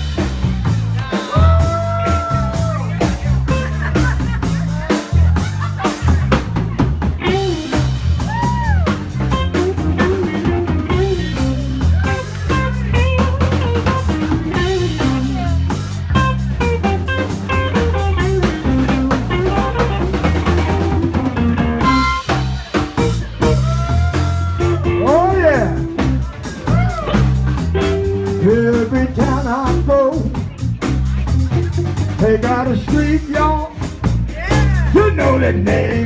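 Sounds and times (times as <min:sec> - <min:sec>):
bass guitar: 0:00.0 - 0:36.0
drum kit: 0:00.0 - 0:36.0
guitar bending notes: 0:07.2 - 0:29.7.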